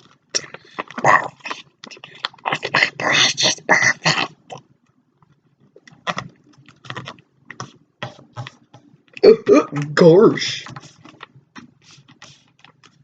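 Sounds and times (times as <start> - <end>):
paper crinkling and rustling: 10.6 - 13.0
paper folds crackling: 10.6 - 13.0.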